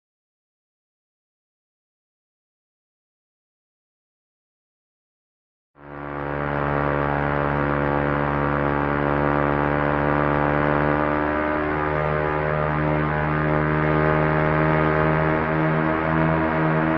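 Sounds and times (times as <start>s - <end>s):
propeller airplane engine drone: 5.8s - 16.9s.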